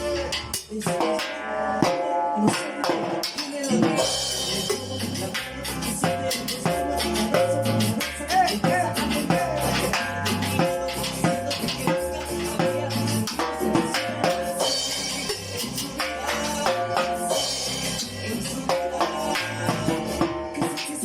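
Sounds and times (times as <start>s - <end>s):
percussion beat: 0.0s - 21.0s
shaker percussion: 2.7s - 21.0s
steady bass line: 4.0s - 20.5s.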